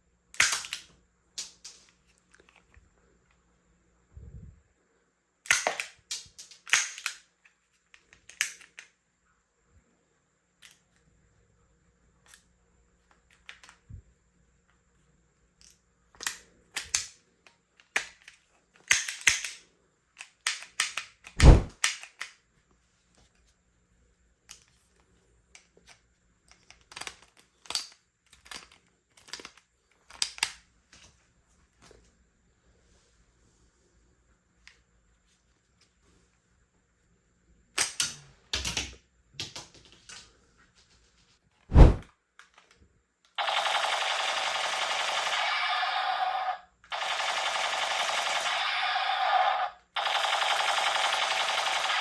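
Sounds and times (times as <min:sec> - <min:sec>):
toy guns cocking and firing: 0:00.4 - 0:01.8, 0:05.5 - 0:07.3, 0:18.8 - 0:19.6, 0:20.2 - 0:22.4, 0:43.4 - 0:52.0.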